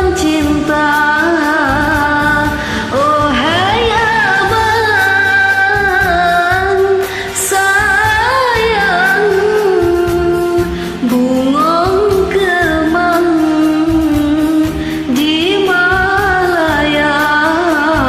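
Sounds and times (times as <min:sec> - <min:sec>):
steady bass line: 0:00.0 - 0:13.2
karaoke backing track: 0:00.0 - 0:18.0
person singing: 0:00.0 - 0:18.0.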